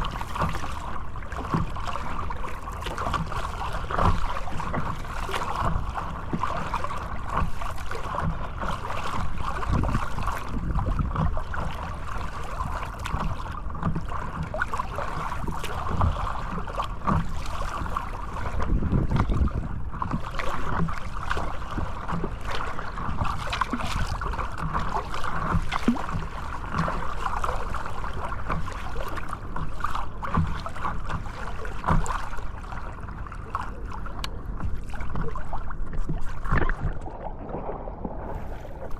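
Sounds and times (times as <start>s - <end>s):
sea water splashing on microphone: 0.0s - 38.9s
low rumble: 34.1s - 38.9s.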